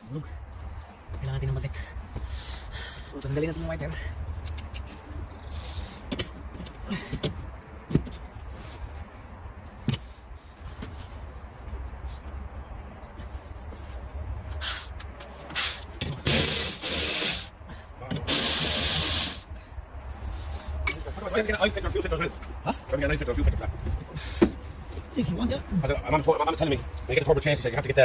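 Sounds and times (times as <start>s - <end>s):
handling clicks and knocks: 9.7s - 10.2s
power tool bursts: 15.6s - 17.5s, 18.3s - 19.4s.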